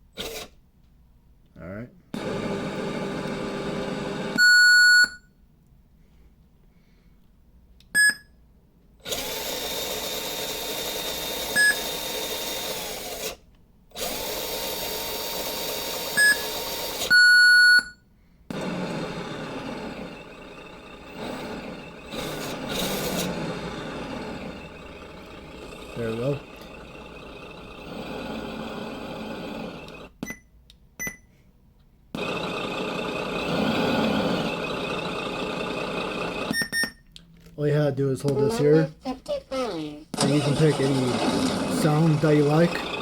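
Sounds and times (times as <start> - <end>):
simulated engine through speaker: 24.4 - 26.8, 40.2 - 43.0.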